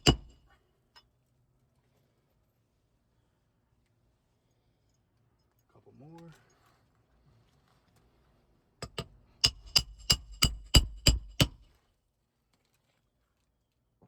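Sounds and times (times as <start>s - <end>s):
hammer striking nail: 0.0s - 0.4s, 8.8s - 11.7s.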